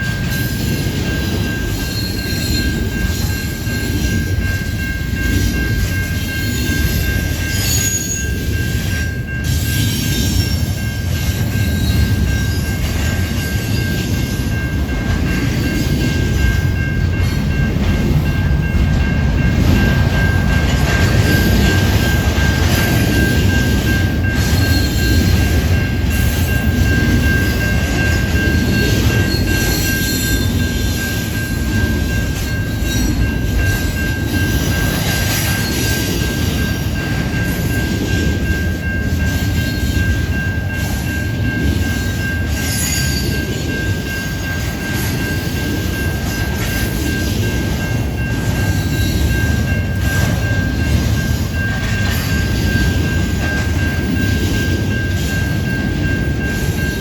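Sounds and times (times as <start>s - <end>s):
freight train rumbling over rails: 0.0s - 57.0s
high-pitched wheel squeal: 7.5s - 8.3s.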